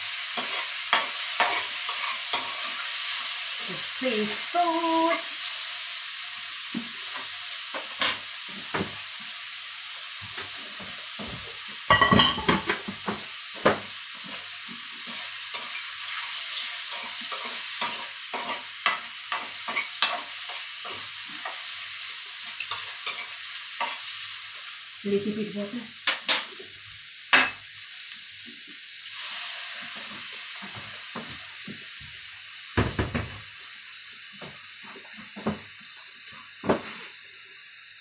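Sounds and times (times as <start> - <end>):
seafood sizzling in a pan: 0.0 - 38.0.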